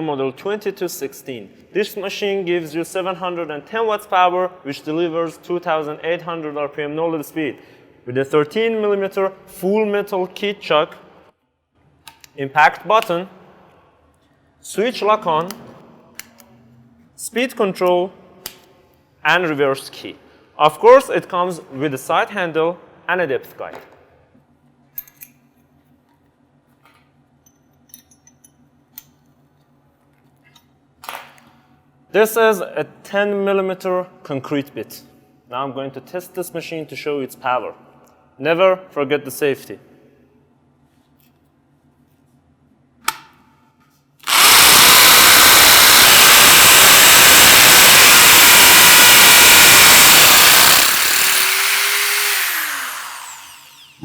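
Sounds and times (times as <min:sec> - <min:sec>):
impact drill hammer-drilling: 0:44.2 - 0:54.0.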